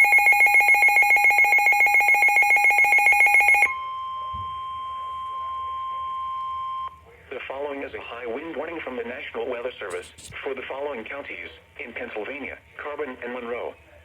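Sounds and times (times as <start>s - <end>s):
steady warning alarm tone: 0.0s - 6.9s.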